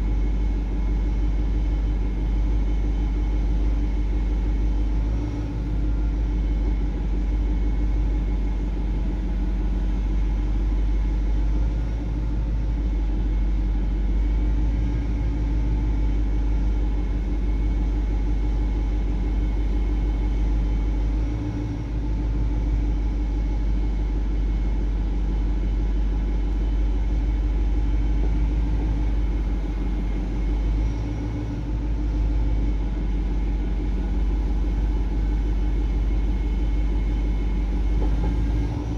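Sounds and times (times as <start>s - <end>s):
steady hum: 0.0s - 38.9s
car engine rumbling: 13.7s - 38.9s.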